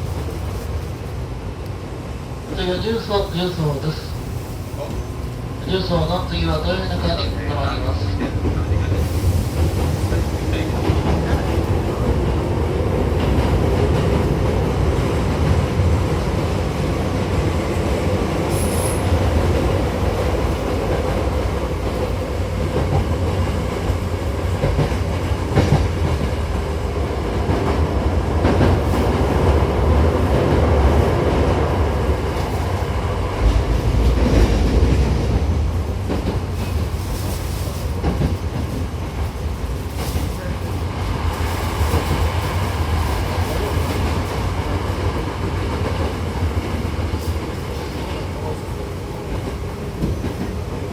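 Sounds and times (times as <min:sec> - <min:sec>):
train wheels rumbling on rail: 0:00.0 - 0:50.9.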